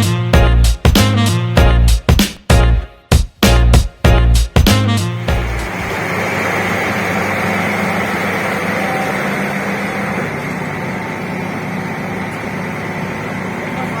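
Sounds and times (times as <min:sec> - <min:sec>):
heavy diesel engine running: 0:05.0 - 0:14.0.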